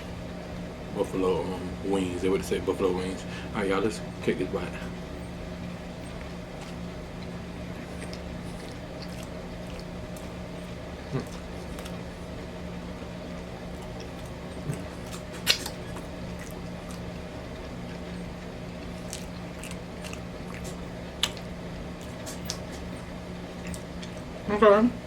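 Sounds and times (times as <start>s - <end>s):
steady low hum: 0.0s - 25.0s
wet chewing sounds: 4.8s - 24.4s.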